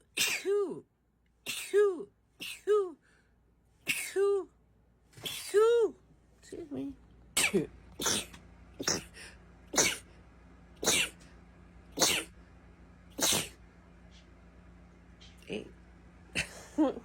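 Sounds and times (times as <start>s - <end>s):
person sneezing: 0.0s - 0.8s, 1.4s - 3.0s, 3.8s - 4.5s, 5.2s - 5.9s, 7.4s - 10.1s, 10.8s - 11.2s, 12.0s - 12.4s, 13.1s - 13.6s.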